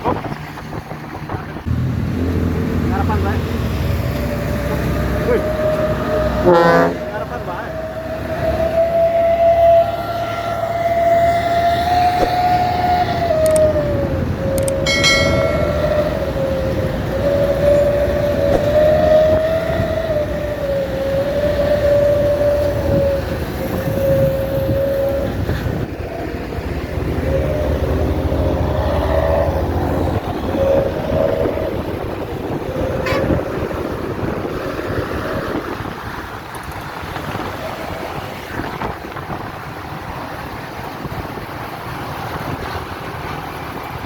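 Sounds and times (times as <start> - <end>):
engine and road rumble: 0.0 - 44.0
bus musical horn tune: 5.8 - 7.4, 14.8 - 20.4, 29.1 - 34.0.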